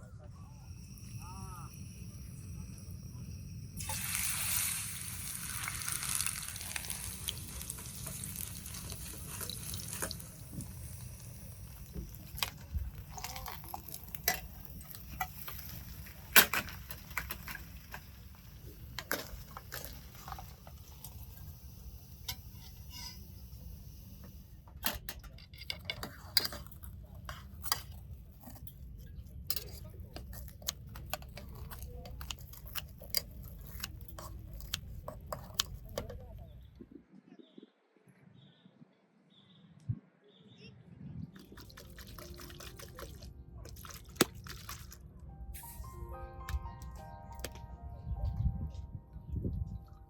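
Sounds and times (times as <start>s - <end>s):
cooking sizzling hiss: 0.8s - 24.6s
pots and utensils clinking: 3.8s - 36.1s.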